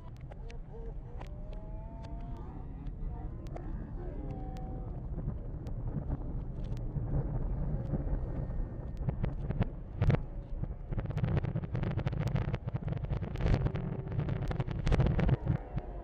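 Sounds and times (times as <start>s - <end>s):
low rumble: 0.0s - 16.0s.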